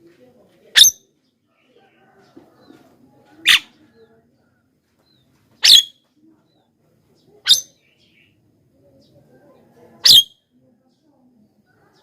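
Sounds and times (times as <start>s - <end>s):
bird harsh calls: 5.6s - 6.0s, 7.4s - 8.3s.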